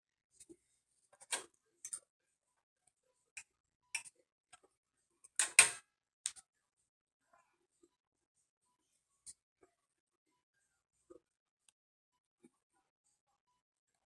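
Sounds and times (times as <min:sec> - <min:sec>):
small parts clicking and tapping: 0:05.3 - 0:06.4.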